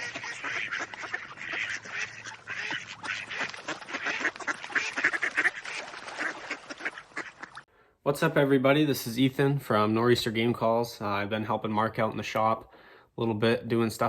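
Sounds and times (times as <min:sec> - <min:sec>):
ducks quacking: 0:00.0 - 0:07.7.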